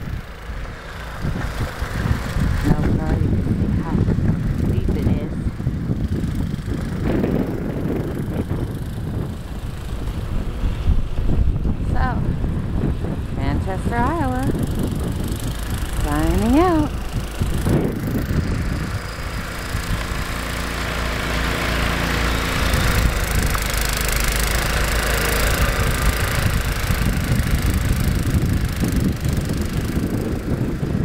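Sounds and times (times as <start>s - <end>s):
motor engine running: 0.0s - 31.0s.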